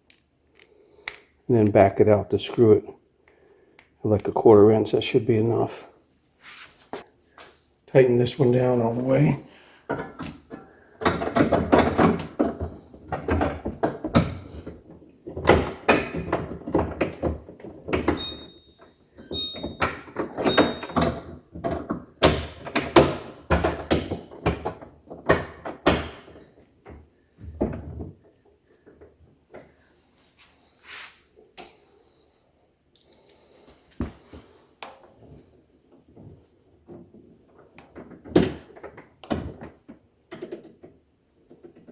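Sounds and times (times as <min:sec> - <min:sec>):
plastic knocks and clatter: 0:09.9 - 0:18.2, 0:19.7 - 0:29.6, 0:36.1 - 0:41.9.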